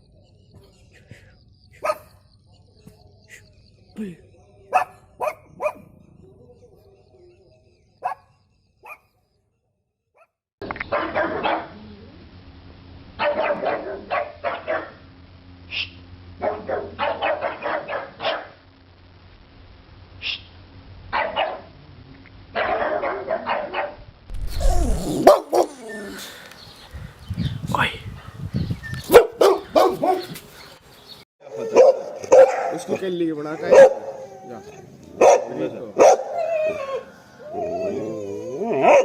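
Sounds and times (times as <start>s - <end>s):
dog barking: 1.8s - 2.2s, 4.7s - 5.9s, 8.0s - 9.1s, 10.9s - 11.8s, 13.2s - 15.0s, 16.4s - 18.6s, 21.1s - 21.7s, 22.5s - 24.0s, 25.1s - 25.8s, 29.1s - 30.4s, 31.5s - 34.3s, 35.1s - 36.4s.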